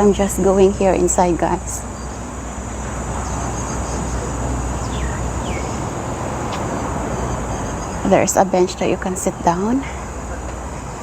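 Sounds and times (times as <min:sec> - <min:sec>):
high insect drone: 0:00.0 - 0:11.0
low rumble of road traffic: 0:00.0 - 0:11.0
faint bird chirps: 0:01.0 - 0:11.0.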